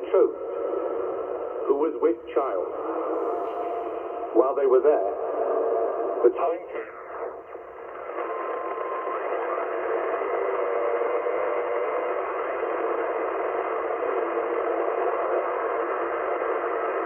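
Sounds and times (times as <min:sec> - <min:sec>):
radio hiss and static: 0:00.0 - 0:11.0.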